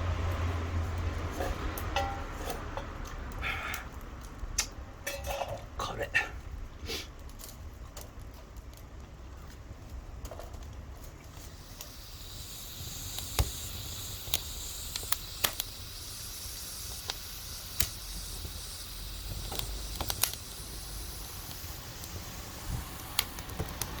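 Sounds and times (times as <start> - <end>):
food sizzling: 0.0 - 5.8, 11.0 - 24.0
wood fire crackling pops: 0.1 - 5.8, 6.6 - 24.0.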